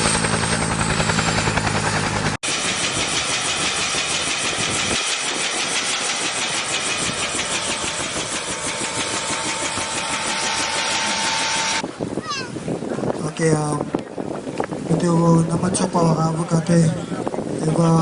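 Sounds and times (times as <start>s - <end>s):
engine running with even pulsing: 0.0s - 11.9s.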